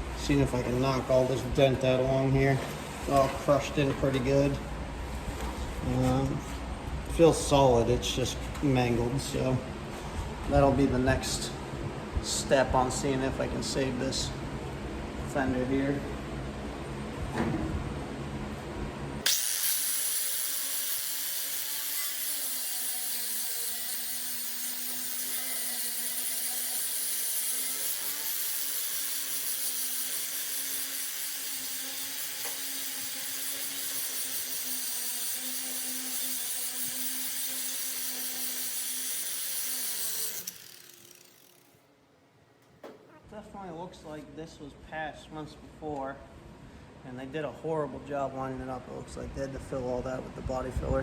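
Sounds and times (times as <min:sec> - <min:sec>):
handheld power tool whining: 0:19.2 - 0:41.8.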